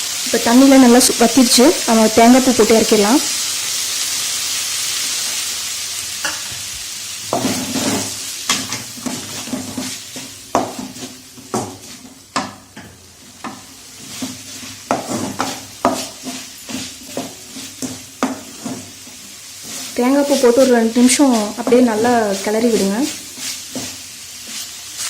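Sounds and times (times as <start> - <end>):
food sizzling in a pan: 0.0 - 25.0
spoon scraping and knocking pan: 6.2 - 25.0.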